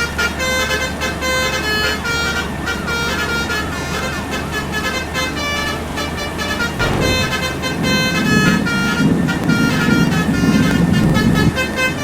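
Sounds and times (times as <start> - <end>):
bus engine: 0.0 - 12.0
road noise: 0.0 - 12.0.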